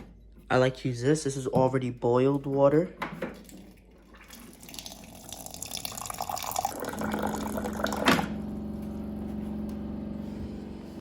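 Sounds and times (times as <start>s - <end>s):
water pouring into a cup: 3.4s - 8.2s
steady hum: 4.8s - 11.0s.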